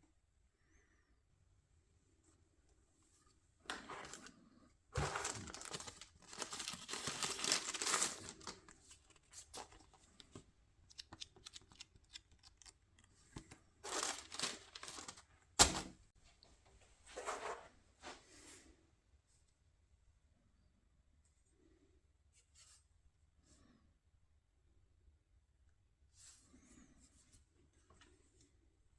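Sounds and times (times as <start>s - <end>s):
packaging rustling and tearing: 5.0s - 15.9s.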